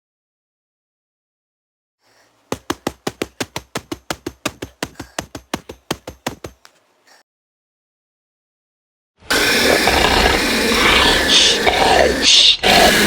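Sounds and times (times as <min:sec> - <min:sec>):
creature chittering clicks: 0:09.5 - 0:13.0.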